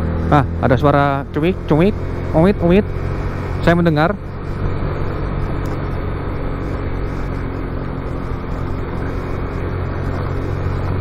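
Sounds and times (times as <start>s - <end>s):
motorcycle engine cruising: 0.0s - 11.0s
wind and road noise: 0.0s - 11.0s.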